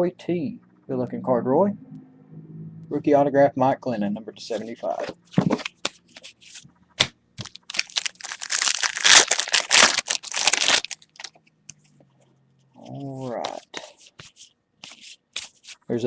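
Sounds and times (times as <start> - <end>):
foil wrapper crinkling: 7.4 - 11.4.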